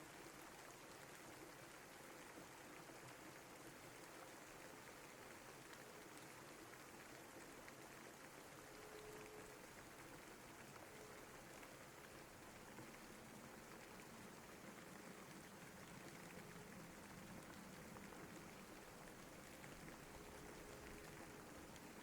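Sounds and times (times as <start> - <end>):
rain hissing: 11.8 - 22.0.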